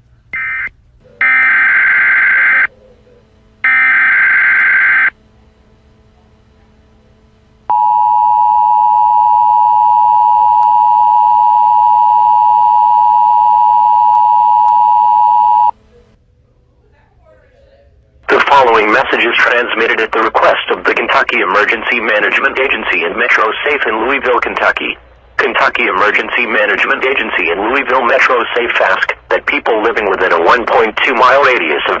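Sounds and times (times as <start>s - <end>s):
two-tone attention signal: 0.4s - 2.7s, 7.7s - 15.8s
digital data bursts: 3.5s - 5.2s, 18.3s - 32.0s.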